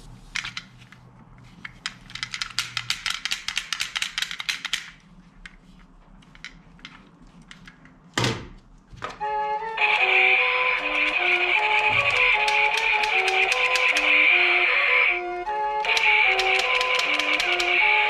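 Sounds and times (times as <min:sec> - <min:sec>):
toy gun mechanism clicking: 0:01.7 - 0:05.0, 0:10.7 - 0:14.3, 0:15.8 - 0:18.0
toy gun burst: 0:10.7 - 0:14.4, 0:15.9 - 0:17.9.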